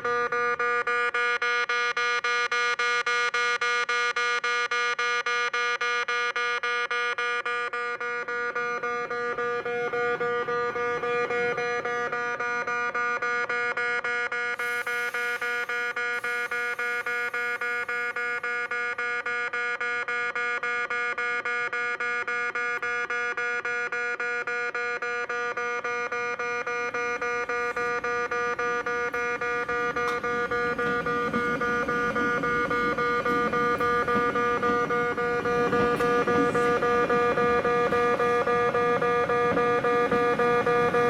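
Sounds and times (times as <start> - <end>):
brief hiss: 14.6 - 18.7
level-crossing bell clanging: 27.6 - 39.0.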